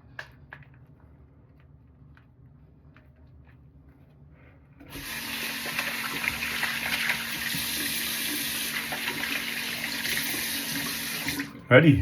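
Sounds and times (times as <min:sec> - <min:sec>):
tap water running into sink: 0:04.8 - 0:11.7.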